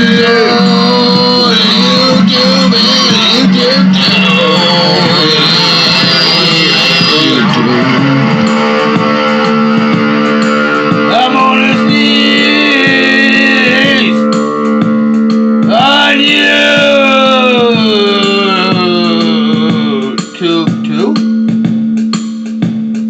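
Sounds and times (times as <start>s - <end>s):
guitar music: 0.0s - 22.0s
steady low held note: 3.9s - 16.8s.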